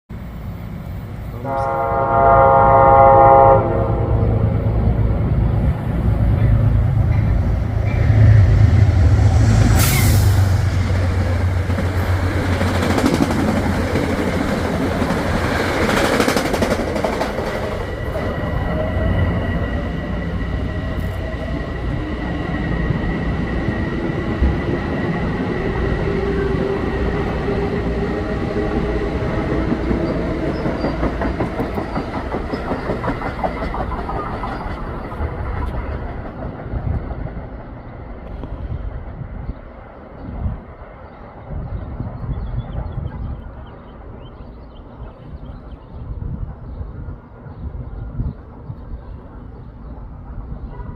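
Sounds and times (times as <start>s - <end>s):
train wheels clattering: 6.4s - 18.9s, 27.4s - 37.6s.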